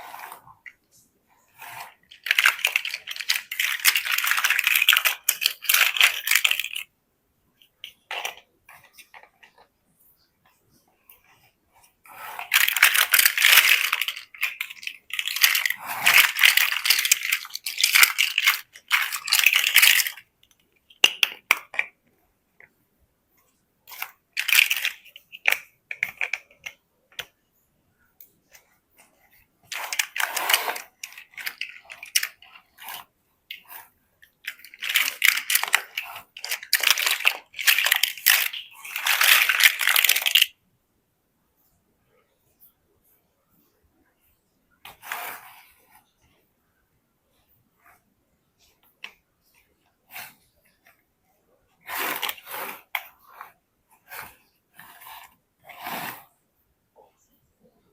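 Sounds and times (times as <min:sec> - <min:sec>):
plastic bricks clattering and clicking: 0:01.6 - 0:06.9, 0:07.8 - 0:09.6, 0:12.1 - 0:22.0, 0:23.9 - 0:27.2, 0:29.6 - 0:40.5, 0:51.9 - 0:53.5.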